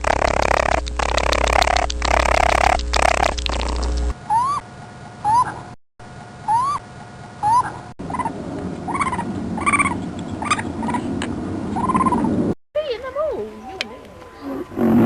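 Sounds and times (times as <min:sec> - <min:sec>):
animal calls: 0:04.2 - 0:05.7, 0:06.4 - 0:11.1, 0:11.7 - 0:12.4.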